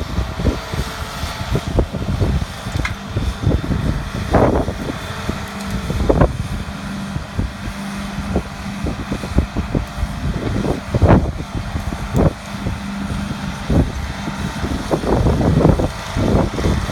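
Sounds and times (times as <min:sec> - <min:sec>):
skid steer engine humming: 0:00.0 - 0:16.9.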